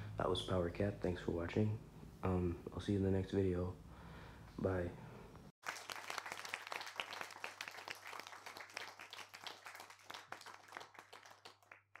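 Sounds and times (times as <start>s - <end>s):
crowd applauding: 5.6s - 12.0s.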